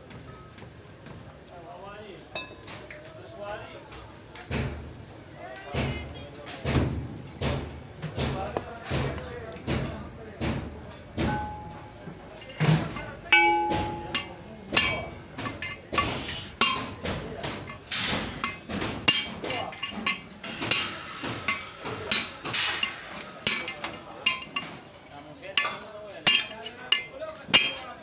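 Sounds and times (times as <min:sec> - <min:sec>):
hammer striking metal: 0:11.2 - 0:25.0, 0:25.6 - 0:28.0.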